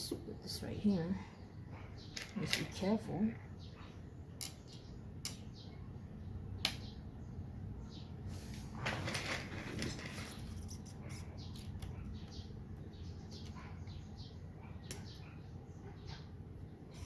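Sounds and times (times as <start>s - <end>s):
small parts clicking and knocking: 4.4s - 5.5s, 8.8s - 12.4s
scraping rustle: 8.3s - 11.3s.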